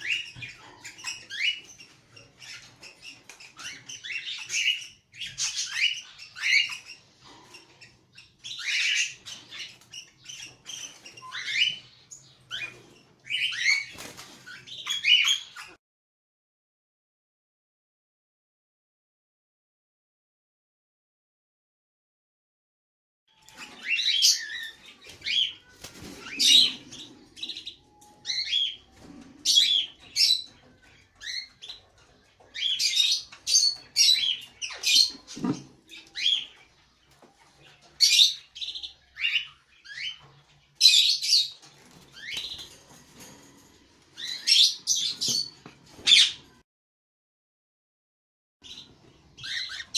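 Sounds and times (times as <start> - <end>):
cockatiels chirping: 0.0 - 15.8, 23.4 - 42.8, 44.2 - 46.6, 48.6 - 49.9.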